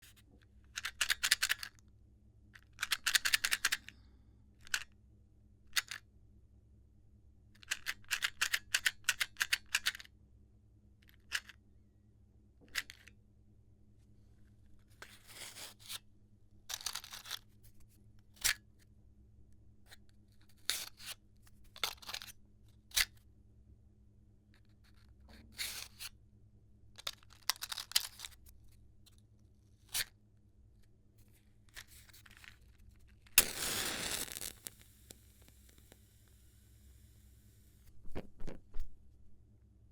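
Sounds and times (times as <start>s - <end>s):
matches rattling in matchbox: 16.7s - 17.5s, 21.8s - 22.3s, 27.0s - 28.4s, 31.8s - 36.0s.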